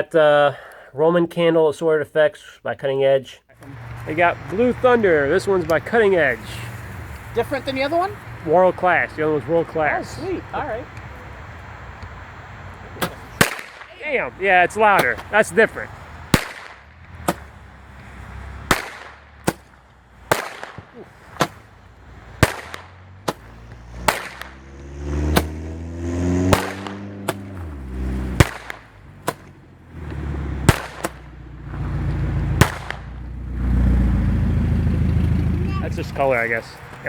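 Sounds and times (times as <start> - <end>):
roman candle firing shots: 13.0 - 14.2, 14.8 - 15.4, 16.3 - 17.5, 18.6 - 21.7, 22.3 - 25.7, 26.3 - 29.5, 30.6 - 31.3, 32.6 - 33.2
sharp loud firework reports: 16.3 - 16.8, 22.3 - 24.6, 26.5 - 29.4, 30.6 - 31.2.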